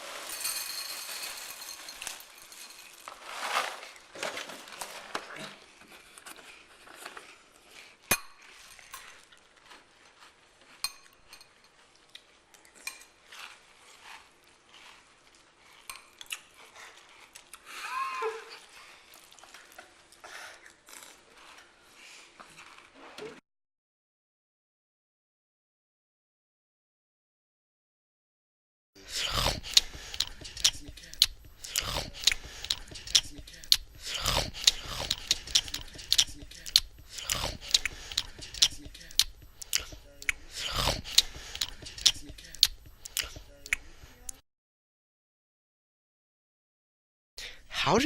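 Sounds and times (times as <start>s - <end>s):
spoon clinking and scraping bowl: 0.0s - 3.2s, 10.7s - 12.0s, 29.1s - 43.4s.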